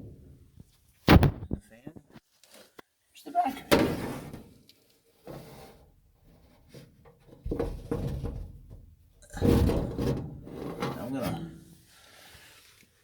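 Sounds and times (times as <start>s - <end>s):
rubbing and scraping: 9.3s - 11.7s.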